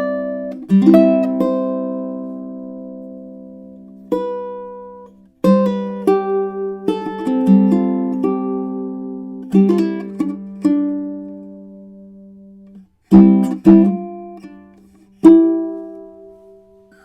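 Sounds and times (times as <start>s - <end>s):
ukulele notes and chords: 0.0s - 17.0s.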